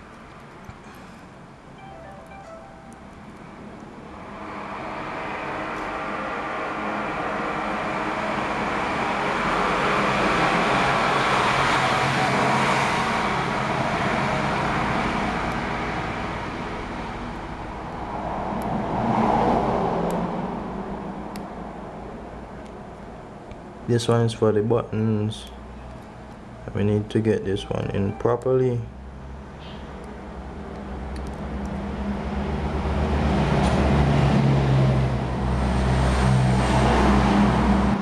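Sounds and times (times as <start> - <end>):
vehicle passing on road: 3.1 - 23.8, 29.0 - 38.0.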